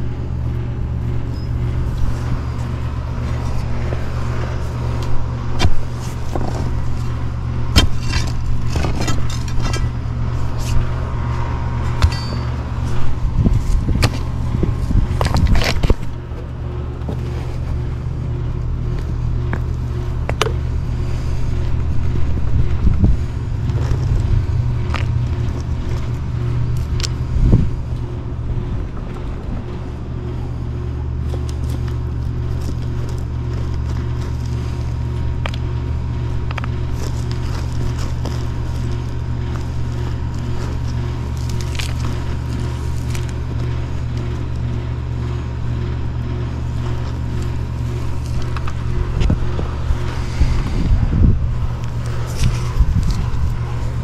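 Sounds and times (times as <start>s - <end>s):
motor droning: 0.0s - 54.0s
knocks and scrapes: 1.9s - 16.4s.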